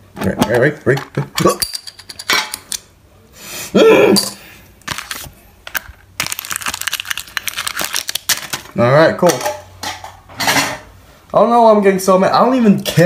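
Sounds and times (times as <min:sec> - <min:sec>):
person grunting or coughing: 0:03.7 - 0:04.4
packaging crinkling and clicking: 0:04.8 - 0:08.8.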